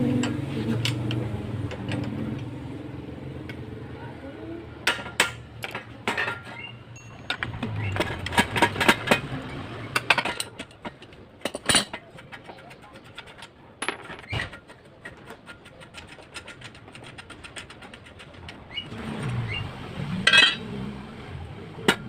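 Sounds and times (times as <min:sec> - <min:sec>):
clicks and knocks on bicycle parts: 0:04.8 - 0:06.6, 0:07.3 - 0:09.4, 0:10.0 - 0:18.7.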